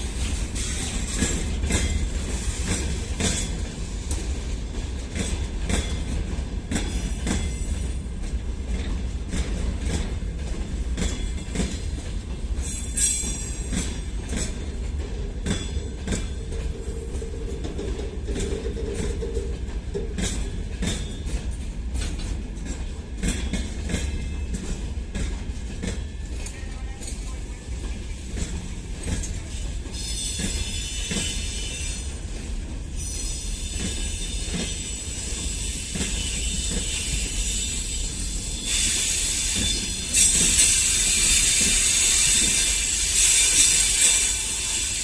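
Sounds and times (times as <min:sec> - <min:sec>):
freight train rolling past: 0:00.0 - 0:45.0
wheels clicking over rail joints: 0:00.2 - 0:31.4
high wheel squeal: 0:30.0 - 0:32.1, 0:33.0 - 0:45.0.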